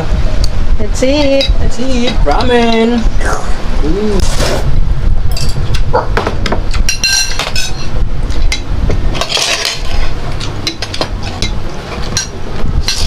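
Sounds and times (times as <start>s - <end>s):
utensils and dishes clinking: 6.8s - 13.0s.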